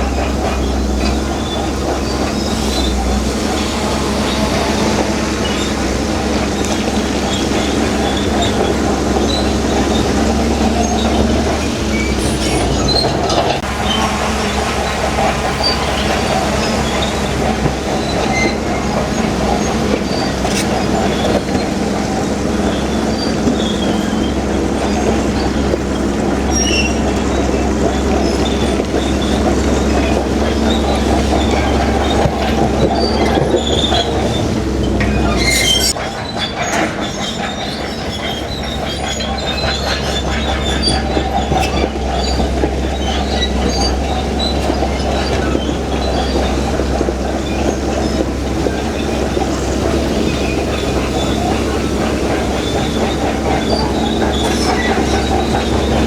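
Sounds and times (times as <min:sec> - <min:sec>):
bulldozer diesel engine: 0:00.0 - 0:56.0
steel tracks clanking and squealing: 0:00.0 - 0:56.0
sharp screech: 0:12.0 - 0:21.1, 0:30.7 - 0:40.8.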